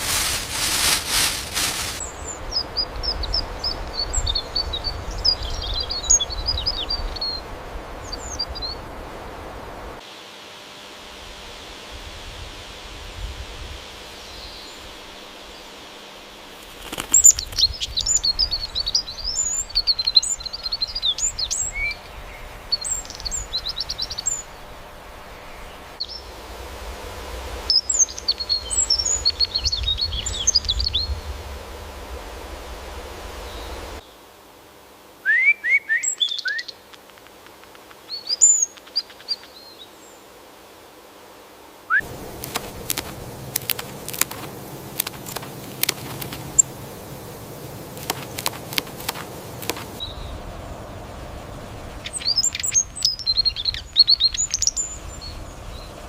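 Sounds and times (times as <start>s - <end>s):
small birds chirping: 0.0s - 9.0s, 14.0s - 26.3s, 27.7s - 31.8s, 32.8s - 34.2s, 35.3s - 40.3s, 41.9s - 56.0s
background hiss: 0.0s - 56.0s
bird calls sliding downward: 16.6s - 24.6s, 41.9s - 50.3s.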